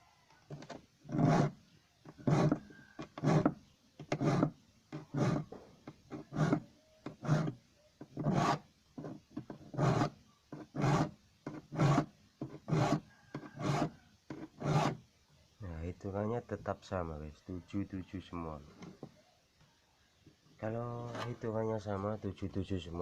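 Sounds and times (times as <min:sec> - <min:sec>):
file rasping on saw teeth: 0:01.1 - 0:05.5, 0:06.1 - 0:15.0.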